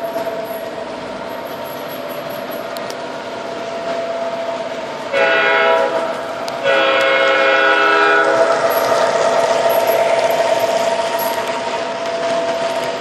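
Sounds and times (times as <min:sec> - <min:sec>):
model train engine hum: 0:00.0 - 0:13.0
electronic train horn blasts: 0:05.1 - 0:09.9.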